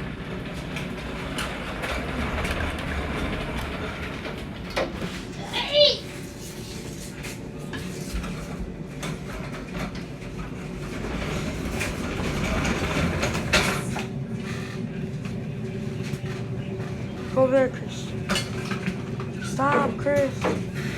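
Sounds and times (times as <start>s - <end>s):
steady low hum: 0.0s - 20.9s
equipment clattering and knocking: 0.3s - 5.4s, 7.7s - 15.4s, 16.0s - 20.9s.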